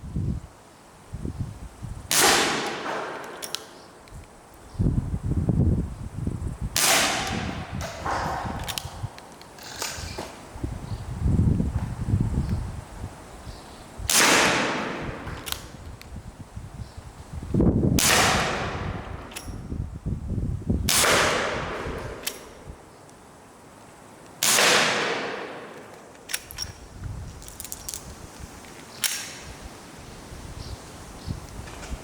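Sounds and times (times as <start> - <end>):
airgun revolver shots: 2.1 - 3.8, 6.8 - 9.0, 14.1 - 15.8, 18.0 - 19.5, 20.9 - 22.7, 24.4 - 26.6.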